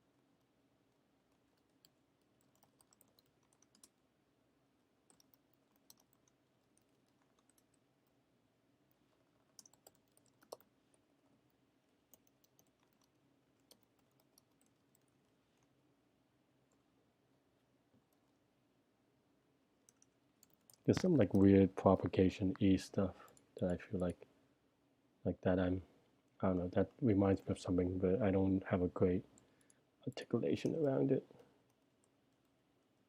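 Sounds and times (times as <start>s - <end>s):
computer keyboard typing: 1.3s - 4.0s, 5.1s - 8.2s, 9.2s - 10.7s, 12.1s - 15.3s, 19.9s - 21.4s.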